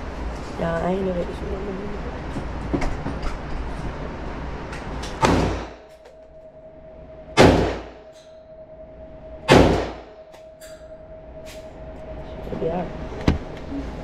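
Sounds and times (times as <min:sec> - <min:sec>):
gunshots: 0:05.2 - 0:05.8, 0:07.4 - 0:07.9, 0:09.5 - 0:10.1
faint steady tone: 0:05.8 - 0:14.0.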